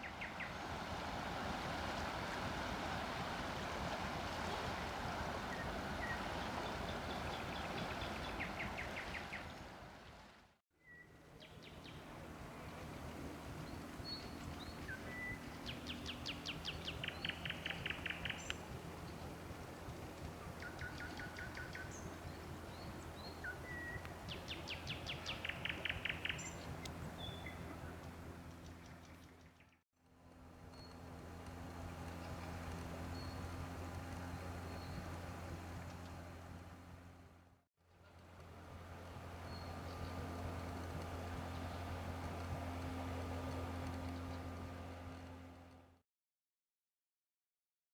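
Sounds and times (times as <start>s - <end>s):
steady low hum: 11.1s - 46.0s.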